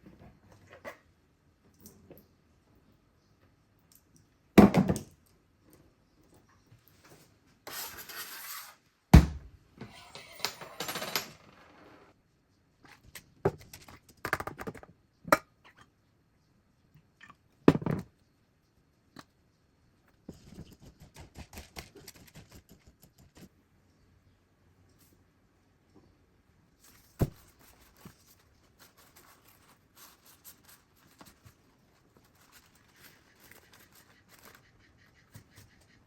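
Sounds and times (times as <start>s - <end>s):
rustling: 26.8s - 35.8s.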